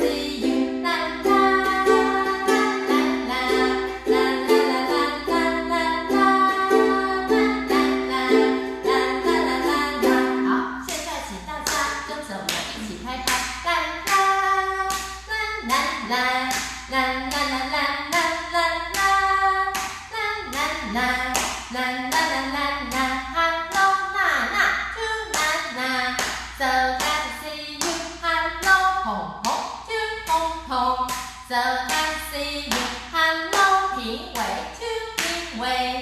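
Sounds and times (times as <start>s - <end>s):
ukulele strumming: 0.0s - 11.4s
person singing wordlessly: 0.0s - 36.0s
hands clapping: 21.3s - 21.7s, 29.4s - 29.8s.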